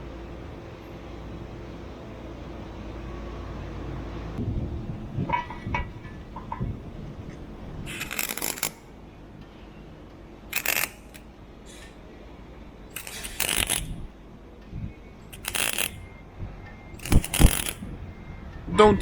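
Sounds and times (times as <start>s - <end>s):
welder arc crackling: 5.0s - 9.0s, 10.5s - 12.0s, 12.9s - 14.2s, 15.2s - 16.0s, 16.9s - 18.1s.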